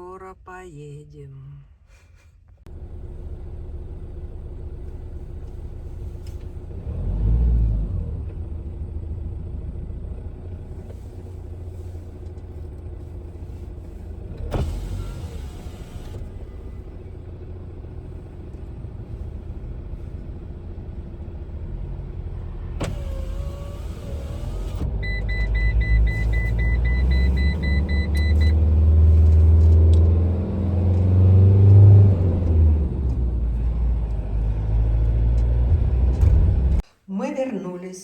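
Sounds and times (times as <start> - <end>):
car engine and road rumble: 0.0 - 36.9
click: 29.3 - 30.2, 30.9 - 33.2.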